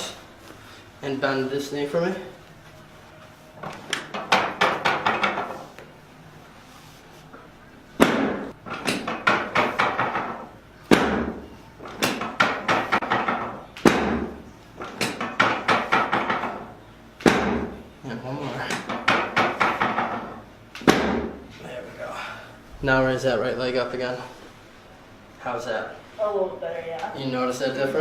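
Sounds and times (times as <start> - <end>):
chiropractic equipment knocking: 3.6 - 5.6, 8.0 - 17.8, 18.6 - 21.4.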